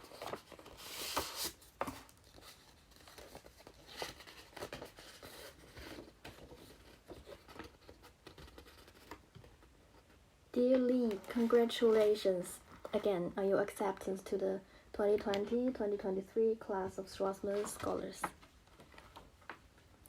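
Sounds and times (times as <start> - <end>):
paper rustling and crinkling: 0.0 - 13.1, 17.4 - 19.7.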